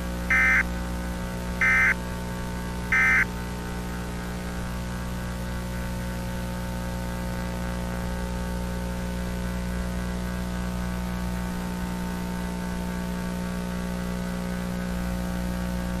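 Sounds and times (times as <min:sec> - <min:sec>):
buzzy electrical hum: 0:00.0 - 0:06.9
static hiss: 0:00.3 - 0:00.6, 0:01.6 - 0:02.0, 0:02.9 - 0:03.2.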